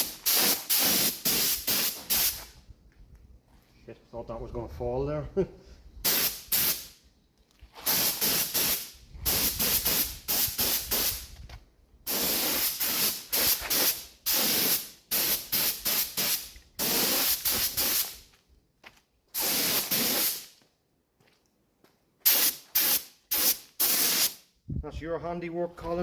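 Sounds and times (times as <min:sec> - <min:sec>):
paint spray gun hissing: 0:00.0 - 0:02.5, 0:06.1 - 0:06.9, 0:07.8 - 0:11.2, 0:12.1 - 0:18.2, 0:19.4 - 0:20.5, 0:22.3 - 0:24.4.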